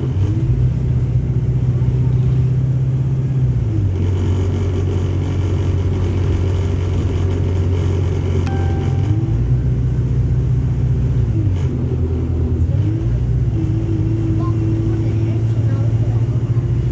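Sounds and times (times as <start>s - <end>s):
bus engine drone: 0.0s - 16.9s.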